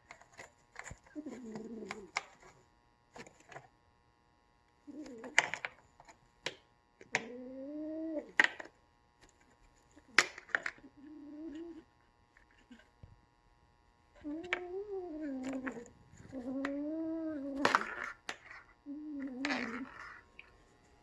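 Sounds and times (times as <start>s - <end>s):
kitten growling: 1.1s - 2.4s, 4.8s - 5.5s, 7.2s - 8.4s, 10.8s - 11.9s, 14.2s - 20.5s.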